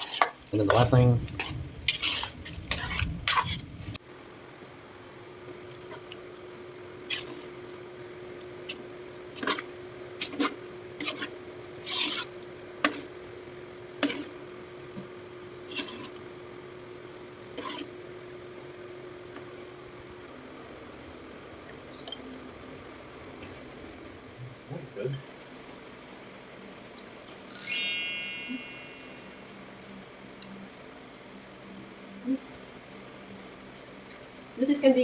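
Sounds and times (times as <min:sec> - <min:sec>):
spoon stirring in a pot: 0:00.0 - 0:04.0, 0:05.5 - 0:07.6, 0:08.3 - 0:13.3, 0:13.9 - 0:16.3, 0:17.4 - 0:18.2.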